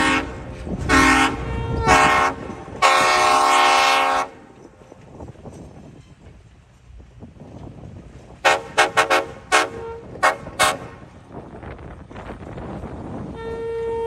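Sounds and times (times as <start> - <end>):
locomotive air horn chord: 0.0 - 4.5, 8.4 - 11.1, 13.3 - 14.0.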